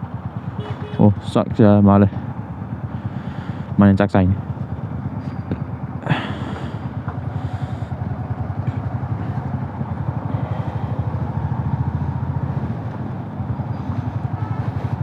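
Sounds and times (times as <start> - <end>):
motorcycle engine running: 0.0 - 15.0.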